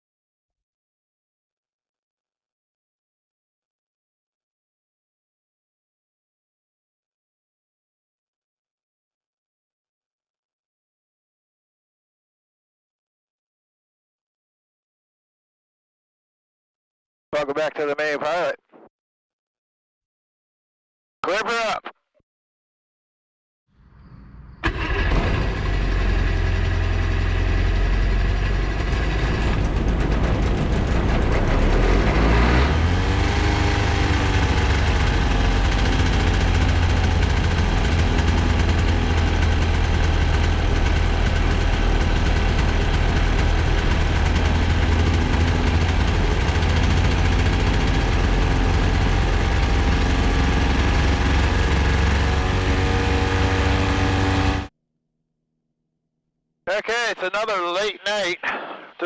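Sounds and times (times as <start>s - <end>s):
aircraft engine starting and idling: 23.8s - 54.7s.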